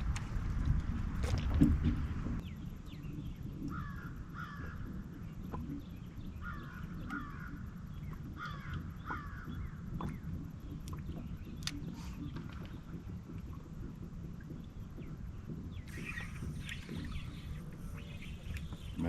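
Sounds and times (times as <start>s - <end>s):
bird harsh calls: 15.9s - 19.0s.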